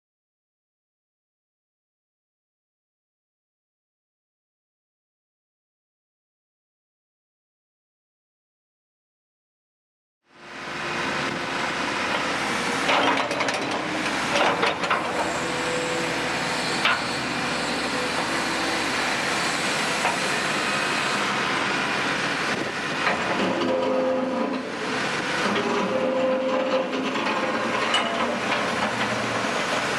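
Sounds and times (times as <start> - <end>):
excavator diesel engine running: 10.4 - 29.9
sharp metal clanks and knocks: 16.7 - 18.3, 26.9 - 29.1.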